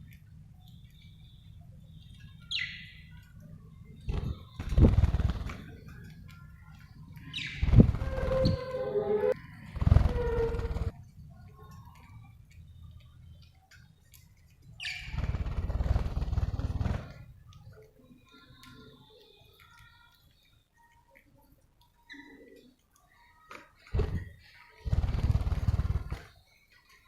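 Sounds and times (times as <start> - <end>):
low rumbling noise: 7.6 - 11.0.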